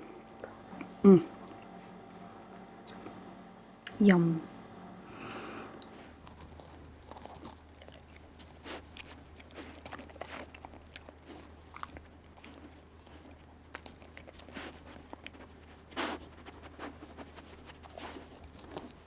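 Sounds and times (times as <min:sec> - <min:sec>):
person crunching and chewing: 0:05.8 - 0:19.0.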